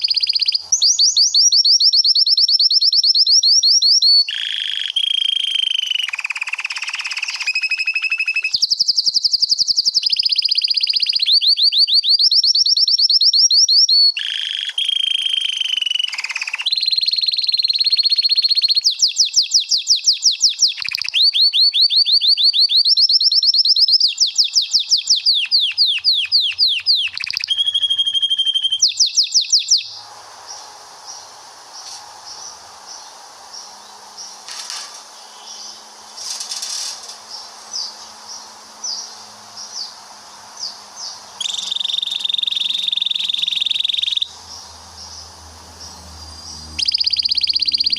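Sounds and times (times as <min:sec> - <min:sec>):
canary singing trills: 0:00.0 - 0:34.4, 0:35.1 - 0:47.9
faint pulsing high chirping: 0:00.0 - 0:34.4, 0:37.2 - 0:47.9.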